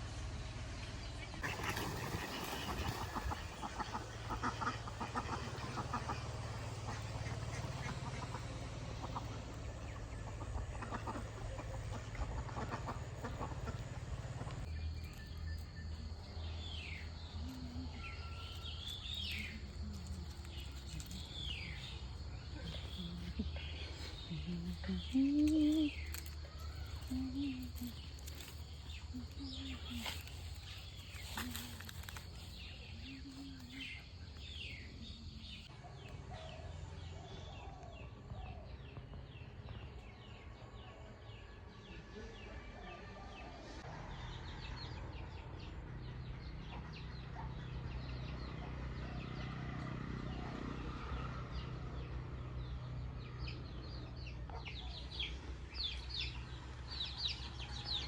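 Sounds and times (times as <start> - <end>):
steady low hum: 0.0 - 35.8
birds chirping: 0.4 - 35.7.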